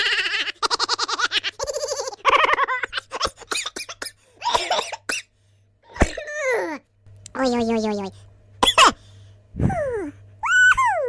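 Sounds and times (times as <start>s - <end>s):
cartoonish laughing: 0.0s - 4.0s.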